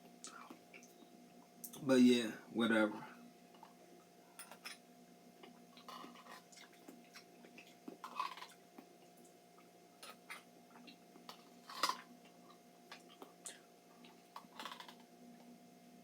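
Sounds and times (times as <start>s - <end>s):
mouth clicks and smacks: 5.4s - 12.0s, 12.9s - 15.0s
faint chewing: 5.4s - 15.5s.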